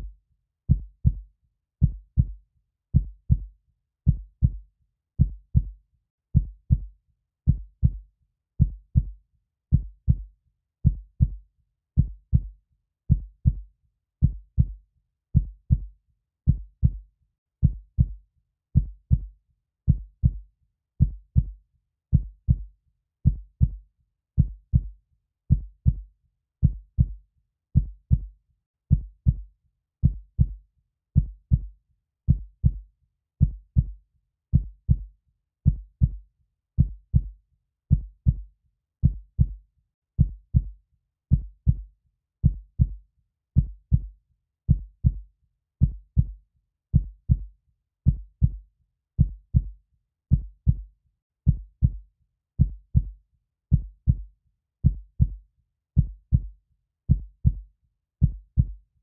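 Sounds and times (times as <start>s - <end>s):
heartbeat: 1.8s - 2.4s, 3.0s - 3.5s, 4.1s - 4.6s, 5.2s - 5.8s, 6.4s - 6.9s, 7.5s - 8.0s, 8.6s - 11.4s, 12.0s - 12.5s, 13.1s - 13.6s, 14.2s - 14.8s, 15.4s - 15.9s, 16.5s - 17.0s, 17.6s - 18.2s, 18.8s - 19.3s, 19.9s - 20.4s, 21.0s - 22.7s, 23.3s - 23.8s, 24.4s - 24.9s, 25.5s - 27.2s, 27.8s - 28.3s, 28.9s - 30.6s, 31.2s - 31.7s, 32.3s - 32.8s, 33.4s - 34.0s, 34.6s - 35.1s, 35.7s - 36.2s, 36.8s - 39.6s, 40.2s - 43.0s, 43.6s - 44.1s, 44.7s - 45.2s, 45.8s - 46.4s, 47.0s - 47.5s, 48.1s - 48.6s, 49.2s - 50.9s, 51.5s - 52.0s, 52.6s - 55.4s, 56.0s - 57.6s, 58.2s - 58.8s.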